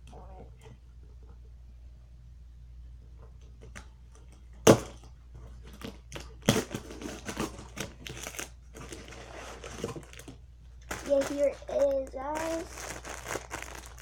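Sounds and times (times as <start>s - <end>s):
package thumps: 4.6s - 5.1s, 10.9s - 14.0s
cardboard rustling: 4.8s - 14.0s.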